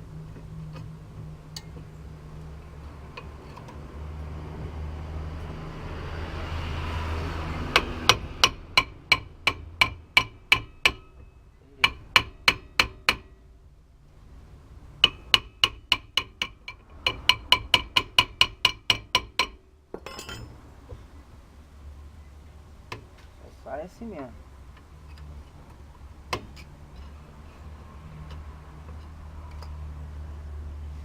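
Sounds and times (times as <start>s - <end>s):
hammer striking metal: 7.7s - 13.4s, 15.0s - 20.5s.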